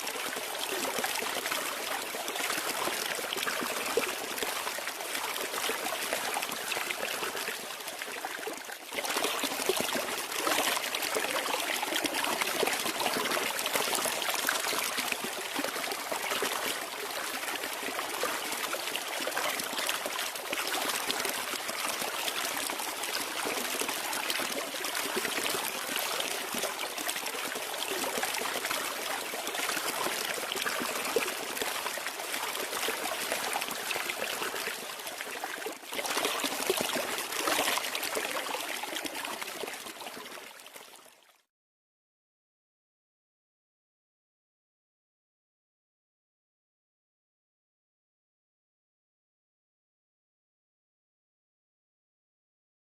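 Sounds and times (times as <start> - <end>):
water trickling and rushing: 8.8 - 40.5.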